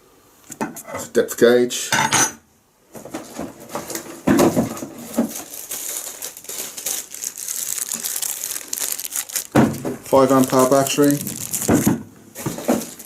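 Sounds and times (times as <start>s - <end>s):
packaging crinkling: 3.7s - 13.0s.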